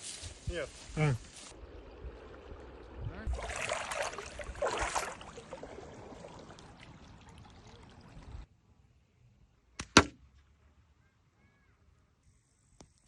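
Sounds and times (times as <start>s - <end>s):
water pouring and splashing: 0.1s - 8.5s.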